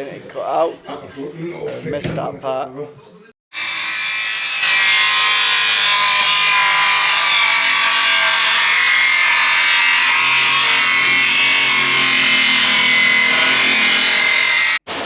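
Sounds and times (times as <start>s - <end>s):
power saw cutting with high whine: 3.5s - 14.8s.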